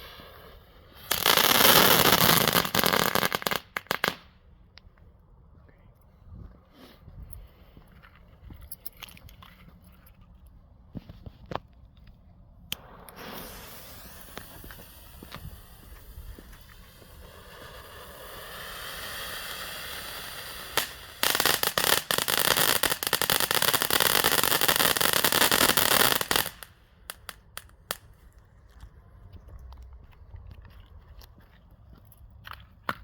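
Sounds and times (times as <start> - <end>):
firework fountain hissing: 0.0 - 4.2, 12.8 - 27.7
firework crackling: 0.0 - 4.3, 12.7 - 28.1
firework pops: 1.1 - 4.3, 12.7 - 28.1.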